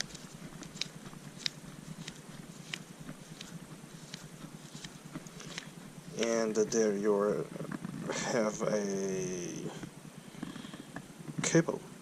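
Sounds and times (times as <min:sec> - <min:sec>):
connector screwing clicks: 0:00.0 - 0:05.7.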